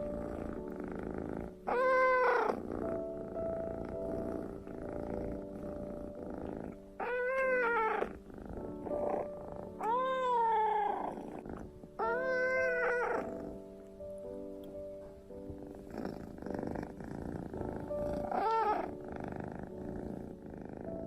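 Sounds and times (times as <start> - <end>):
cat purring: 0.0 - 21.0
kitten meowing: 1.7 - 2.5, 7.0 - 8.1, 9.7 - 11.1, 12.0 - 13.4.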